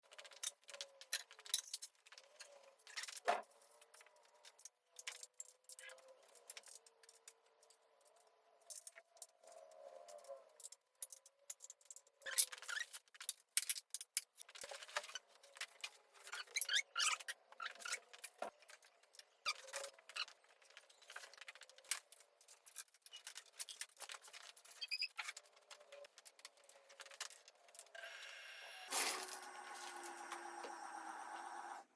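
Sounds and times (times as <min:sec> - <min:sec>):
steady whir: 0:28.0 - 0:31.9.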